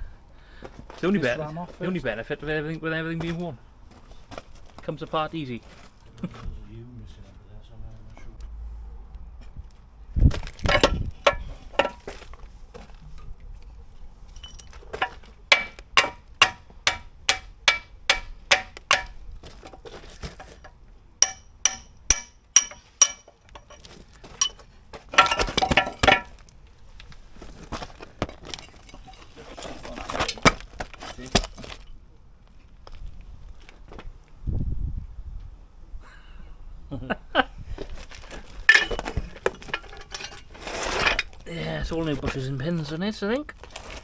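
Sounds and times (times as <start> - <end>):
hammer striking steel: 10.7 - 12.0, 14.4 - 19.2, 20.4 - 23.8, 25.2 - 26.3
metal clatter: 10.7 - 12.2, 14.4 - 19.2, 20.4 - 26.4, 38.7 - 41.4.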